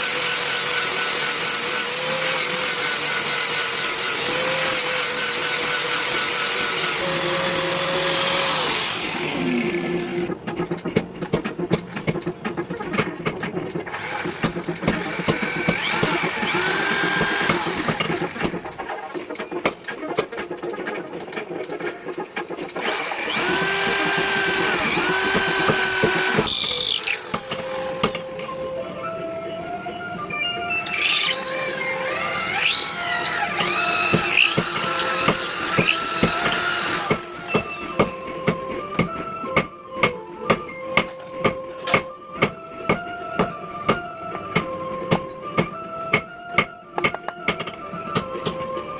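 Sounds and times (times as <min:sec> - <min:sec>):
power tool whine and hiss: 0:00.0 - 0:10.3, 0:14.0 - 0:18.6, 0:22.8 - 0:28.4, 0:32.0 - 0:37.7.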